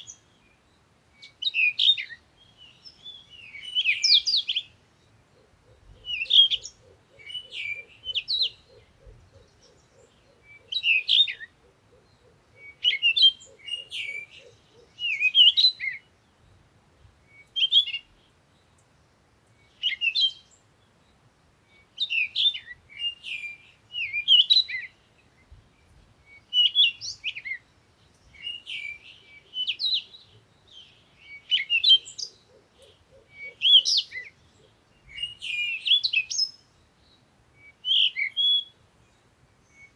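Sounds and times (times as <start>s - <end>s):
birds chirping: 0.0s - 16.7s.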